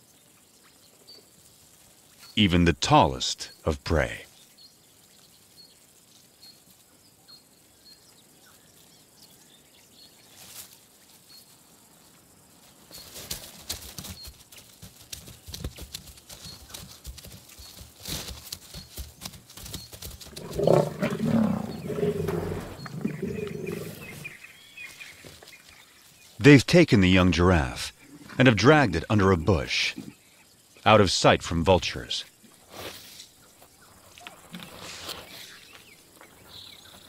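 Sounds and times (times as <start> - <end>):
rustling and scuffling: 10.2 - 26.4
low lion growls: 20.3 - 24.4.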